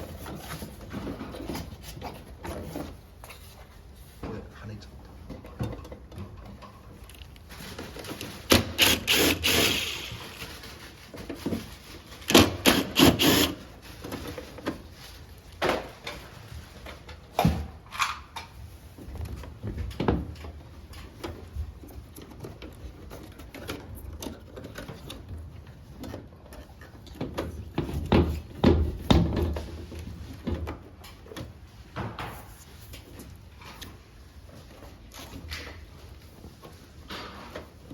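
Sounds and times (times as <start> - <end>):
parts clicking knocking and rattling: 5.2 - 10.4.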